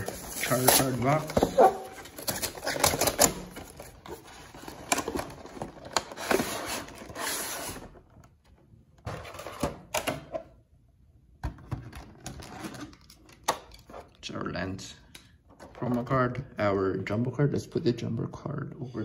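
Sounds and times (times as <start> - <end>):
packaging rustling and clicking: 0.0 - 7.8.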